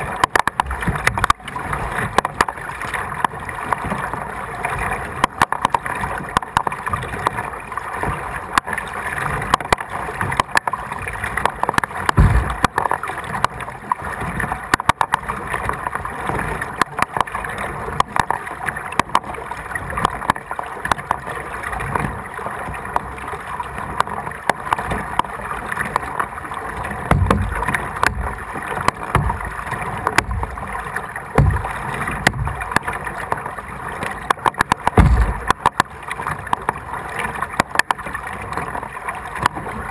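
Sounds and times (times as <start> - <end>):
paddle strokes splashing: 0.0 - 39.9
water lapping: 0.0 - 39.9
small clicks and knocks: 5.2 - 7.4, 9.4 - 14.0, 14.7 - 16.0, 27.1 - 38.7
low thumps: 12.1 - 12.8, 27.1 - 28.4, 29.1 - 30.6, 31.4 - 32.7, 34.9 - 35.7.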